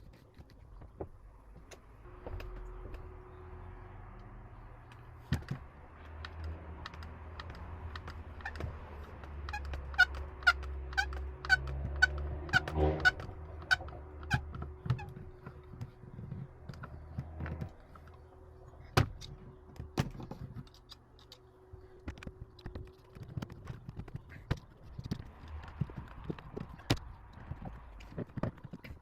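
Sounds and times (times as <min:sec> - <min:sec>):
hard objects knocking and clicking: 0:22.0 - 0:29.0.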